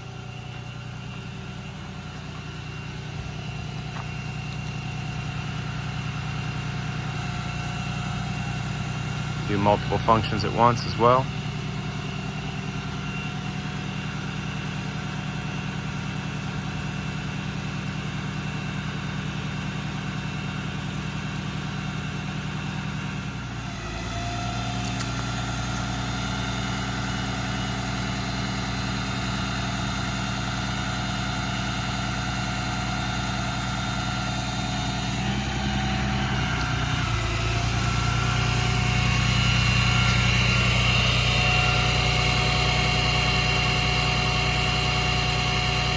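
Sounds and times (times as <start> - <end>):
diesel engine running: 0.0 - 45.9
hydraulic crane operating: 0.0 - 45.9.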